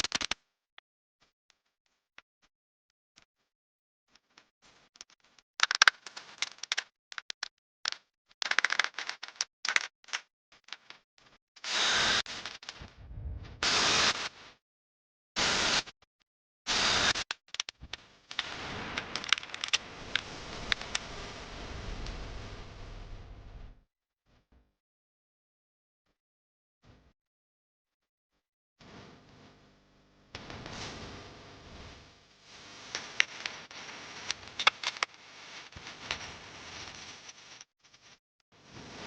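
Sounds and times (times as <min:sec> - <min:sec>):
crackling and scraping: 0:00.0 - 0:00.4, 0:04.1 - 0:14.3, 0:16.7 - 0:22.8, 0:32.7 - 0:39.0
hiss bursts: 0:11.6 - 0:12.6, 0:13.6 - 0:14.4, 0:15.4 - 0:15.9, 0:16.7 - 0:17.2.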